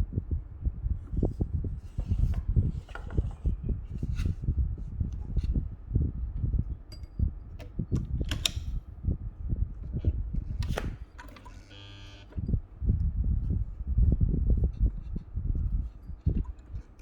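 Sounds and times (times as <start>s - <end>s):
buzzing tone: 11.5s - 12.4s.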